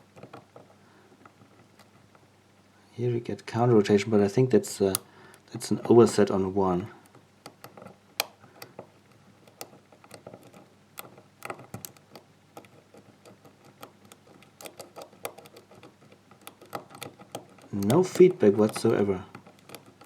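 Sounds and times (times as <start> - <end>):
lock pick clicking in lock: 7.4 - 20.0.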